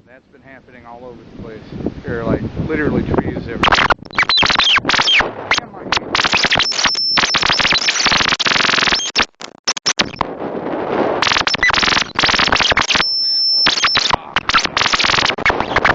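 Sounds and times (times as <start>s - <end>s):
gusty wind buffeting microphone: 0.0s - 6.2s, 10.2s - 11.3s.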